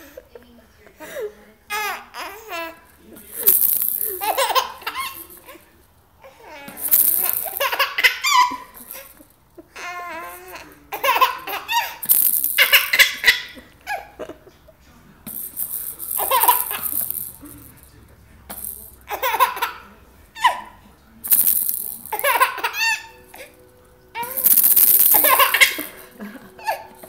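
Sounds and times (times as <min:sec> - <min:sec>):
rattle shaking: 0:03.0 - 0:05.7, 0:06.7 - 0:09.5, 0:10.2 - 0:13.4, 0:15.3 - 0:19.6, 0:21.2 - 0:23.6, 0:24.2 - 0:26.2
baby giggling: 0:04.1 - 0:05.6, 0:07.4 - 0:09.2, 0:09.8 - 0:12.0, 0:19.1 - 0:19.8, 0:22.1 - 0:23.2.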